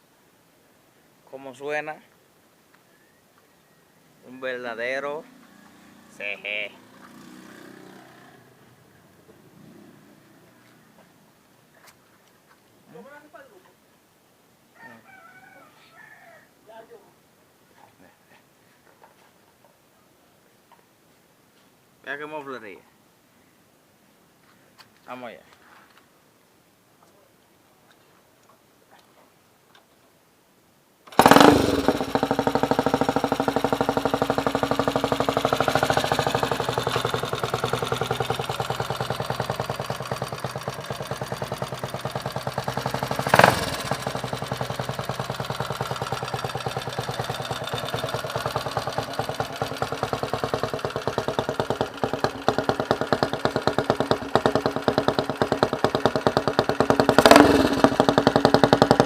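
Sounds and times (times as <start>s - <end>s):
motorcycle engine idling: 31.1s - 59.0s.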